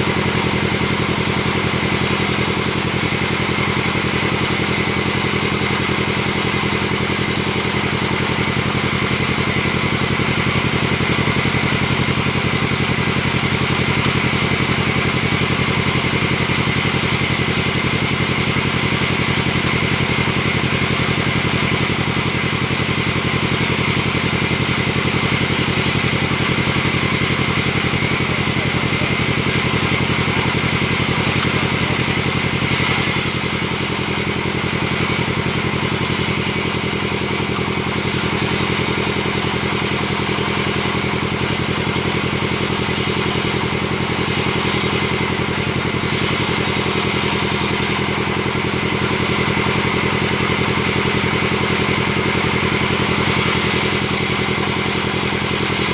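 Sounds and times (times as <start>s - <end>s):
bright hiss: 0.0s - 8.2s, 32.5s - 49.1s, 52.9s - 55.9s
band sawmill running: 0.0s - 55.9s.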